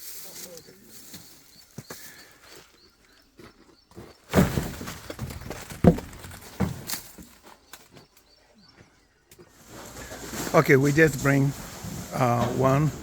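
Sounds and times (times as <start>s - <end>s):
loud thumps and knocks: 4.3s - 7.0s
faint rustling: 9.4s - 13.0s.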